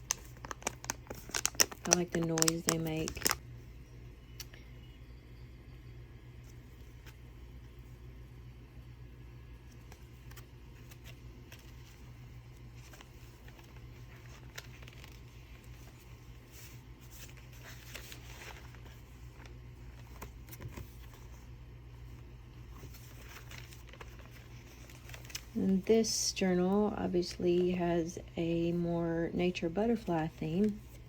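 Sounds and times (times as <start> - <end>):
paper pages rustling: 0.0 - 3.4, 9.7 - 25.9
faint low hum: 0.0 - 31.0.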